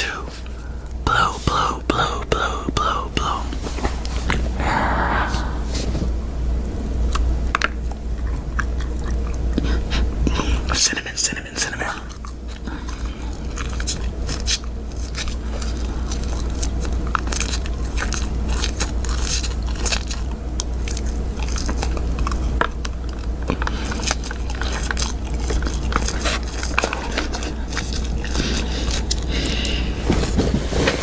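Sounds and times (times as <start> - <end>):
low electrical hum: 0.0 - 31.0
person biting and chewing soap: 11.8 - 30.4.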